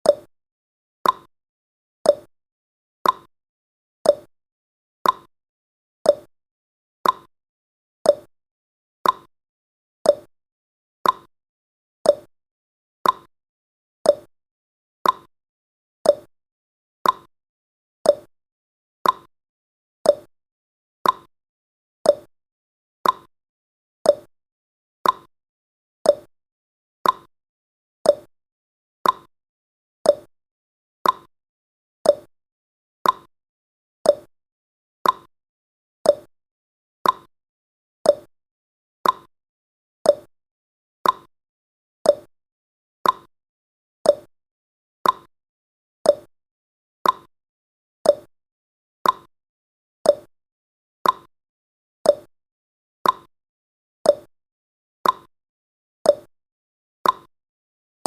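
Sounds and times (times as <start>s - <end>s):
timer ticking: 1.0s - 1.3s, 2.1s - 2.3s, 3.0s - 3.3s, 4.1s - 4.3s, 5.0s - 5.3s, 6.1s - 6.3s, 7.0s - 7.3s, 8.1s - 8.3s, 9.0s - 9.3s, 10.1s - 10.3s, 11.0s - 11.3s, 12.1s - 12.3s, 13.0s - 13.3s, 14.1s - 14.3s, 15.0s - 15.3s, 16.0s - 16.3s, 17.0s - 17.3s, 18.1s - 18.3s, 19.0s - 19.3s, 20.1s - 20.3s, 21.0s - 21.3s, 22.1s - 22.3s, 23.0s - 23.3s, 24.1s - 24.3s, 25.0s - 25.3s, 26.1s - 26.3s, 27.0s - 27.3s, 28.1s - 28.3s, 29.0s - 29.3s, 30.0s - 30.3s, 31.0s - 31.3s, 32.0s - 32.3s, 33.0s - 33.3s, 34.1s - 34.3s, 35.0s - 35.3s, 36.0s - 36.3s, 37.0s - 37.3s, 38.1s - 38.3s, 39.0s - 39.3s, 40.1s - 40.3s, 41.0s - 41.3s, 42.1s - 42.3s, 43.0s - 43.3s, 44.1s - 44.3s, 45.0s - 45.3s, 46.1s - 46.3s, 47.0s - 47.3s, 48.0s - 48.3s, 49.0s - 49.3s, 50.1s - 50.3s, 51.0s - 51.3s, 52.1s - 52.3s, 53.0s - 53.3s, 54.1s - 54.3s, 55.0s - 55.3s, 56.1s - 56.3s, 57.0s - 57.3s.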